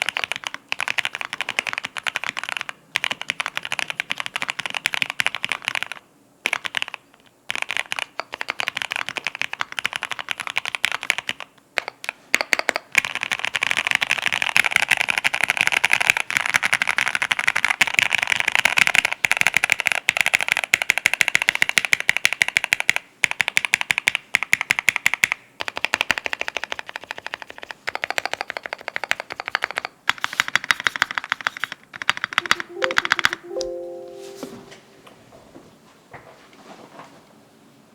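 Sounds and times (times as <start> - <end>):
typing on mechanical keyboard: 0.0 - 33.5
music: 32.4 - 35.1.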